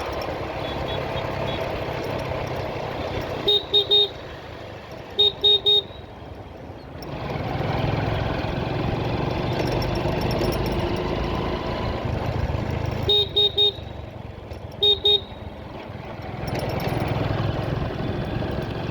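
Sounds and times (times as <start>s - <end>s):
engine and road noise: 0.0s - 18.9s
vehicle horn tooting: 0.6s - 1.8s, 3.4s - 4.2s, 5.1s - 6.1s, 13.0s - 14.0s, 14.8s - 15.5s.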